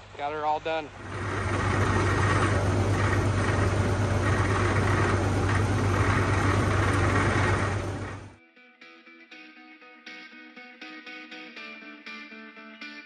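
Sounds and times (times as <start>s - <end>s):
tractor engine running: 0.0s - 8.4s.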